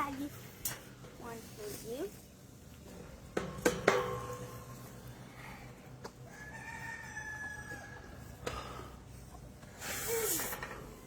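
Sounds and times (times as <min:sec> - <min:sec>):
metallic clang: 0:03.4 - 0:04.8
rooster crowing: 0:06.2 - 0:08.2.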